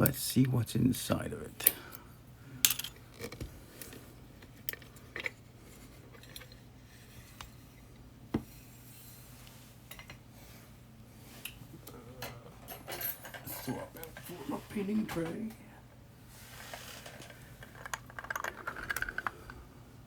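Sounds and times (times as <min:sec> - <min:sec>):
small metal tools clinking: 0:02.6 - 0:03.4.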